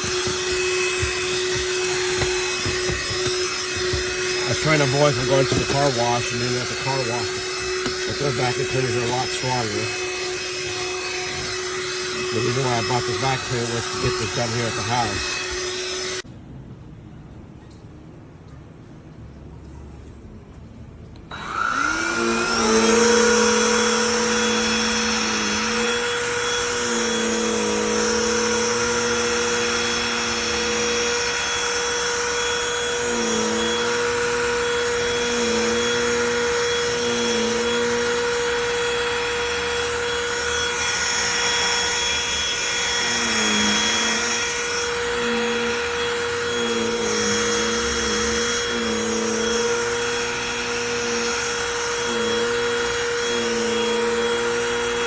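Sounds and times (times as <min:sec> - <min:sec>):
handheld vacuum motor whine: 0:00.0 - 0:16.3, 0:21.3 - 0:55.0.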